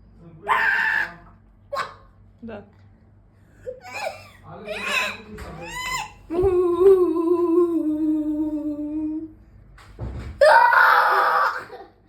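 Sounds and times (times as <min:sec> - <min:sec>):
harsh rasping vocal squawk: 0:04.7 - 0:06.2
person humming a sinking tone: 0:06.4 - 0:09.3.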